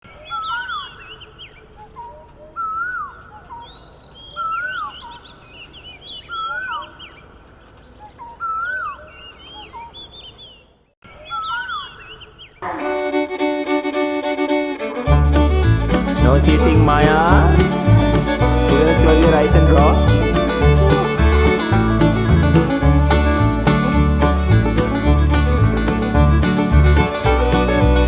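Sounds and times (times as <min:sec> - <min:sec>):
birds chirping: 0:00.0 - 0:12.8
string music: 0:12.7 - 0:28.0.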